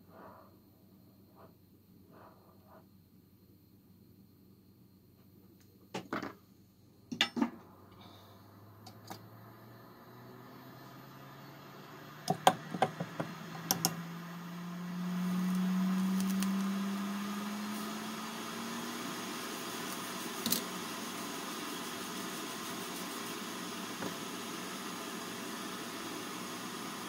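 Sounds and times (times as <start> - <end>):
fan motor humming: 7.5 - 27.0
air blowing hiss: 12.4 - 27.0.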